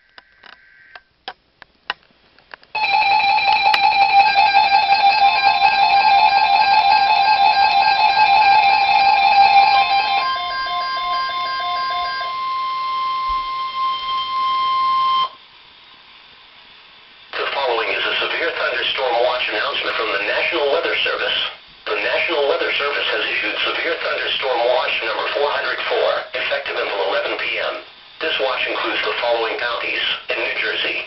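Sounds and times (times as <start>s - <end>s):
electronic alarm beeps: 2.8s - 15.4s
steady attention tone: 2.8s - 15.4s, 17.3s - 31.0s.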